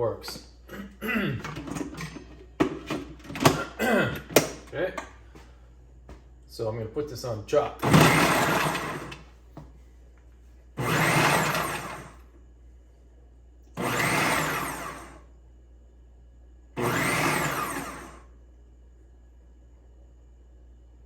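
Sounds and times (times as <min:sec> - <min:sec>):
food processor chopping: 0:07.8 - 0:09.2, 0:10.8 - 0:12.2, 0:13.8 - 0:15.2, 0:16.8 - 0:18.2.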